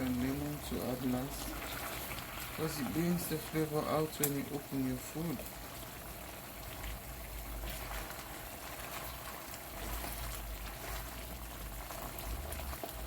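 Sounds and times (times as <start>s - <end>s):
pot of sauce bubbling: 0.0s - 13.0s.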